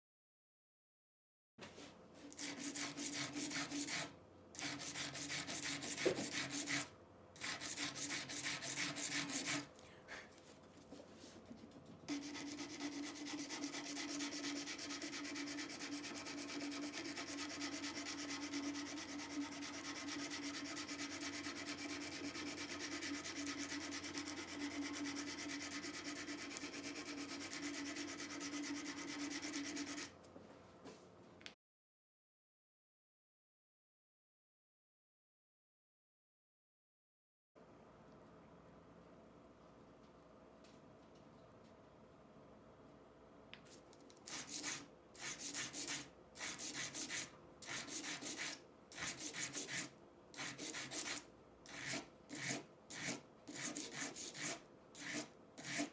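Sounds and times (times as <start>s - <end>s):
metal rasping by hand: 44.3s - 55.9s.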